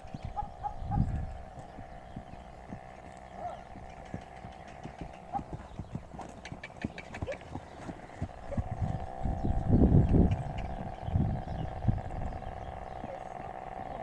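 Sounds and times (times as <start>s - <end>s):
horse hooves clip-clopping: 1.1s - 9.2s.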